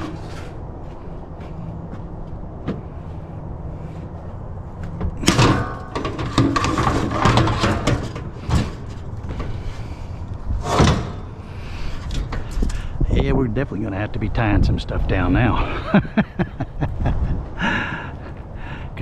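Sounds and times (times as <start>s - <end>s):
scrap clattering and scraping: 0.0s - 1.6s, 4.8s - 13.0s.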